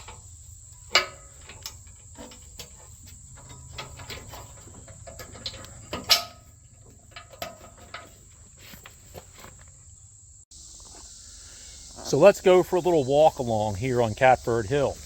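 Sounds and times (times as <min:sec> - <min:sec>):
sharp knocks and clanks: 0:00.0 - 0:09.7
crickets chirring: 0:00.0 - 0:15.0.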